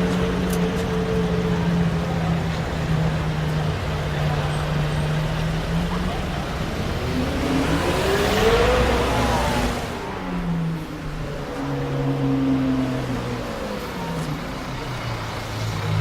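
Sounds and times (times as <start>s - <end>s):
sports car engine revving: 0.0s - 16.0s.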